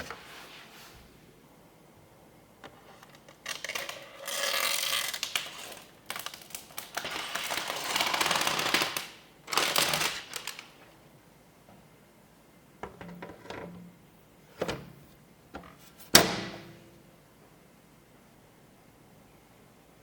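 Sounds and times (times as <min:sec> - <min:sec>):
rustling and crackling packaging: 0:02.8 - 0:11.0.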